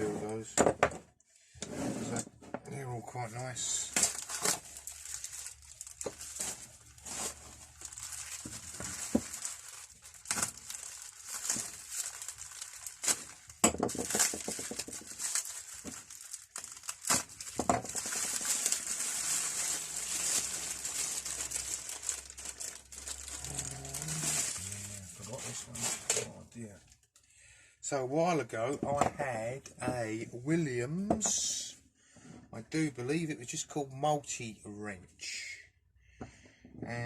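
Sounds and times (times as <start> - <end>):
wrapping crumpling: 3.4 - 27.2.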